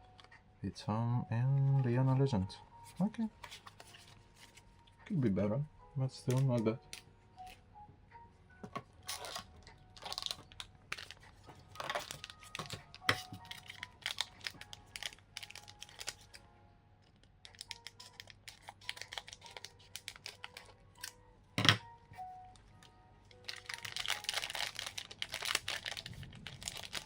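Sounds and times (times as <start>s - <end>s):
cards being shuffled: 2.9s - 4.6s
wrapper crinkling and tearing: 9.0s - 16.4s, 17.4s - 21.2s, 23.3s - 27.0s.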